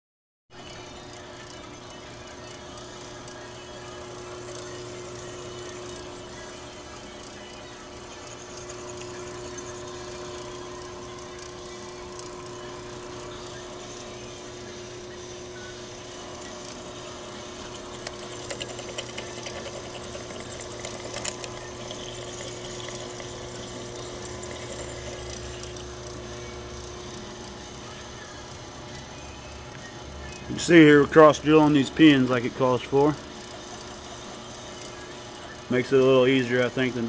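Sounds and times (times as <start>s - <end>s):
drill press motor running: 0.6s - 37.0s
drill bit clicking and scraping: 17.6s - 25.4s.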